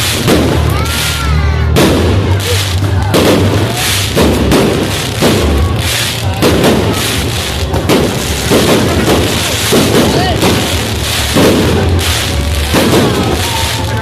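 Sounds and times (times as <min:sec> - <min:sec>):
fireworks bangs and crackling: 0:00.0 - 0:14.0.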